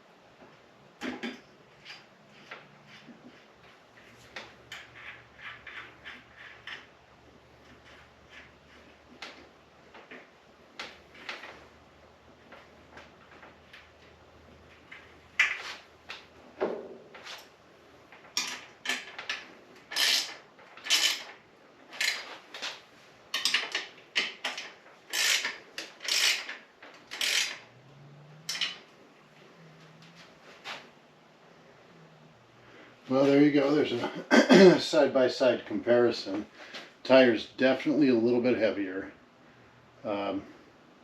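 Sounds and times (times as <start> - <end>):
scraping and rubbing on bicycle tire: 1.7 - 10.3, 12.4 - 16.3, 17.1 - 17.6, 19.8 - 23.1, 25.0 - 31.0.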